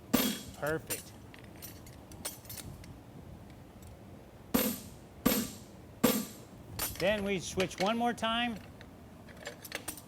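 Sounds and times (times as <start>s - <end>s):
hammer blows on metal: 4.5s - 7.0s.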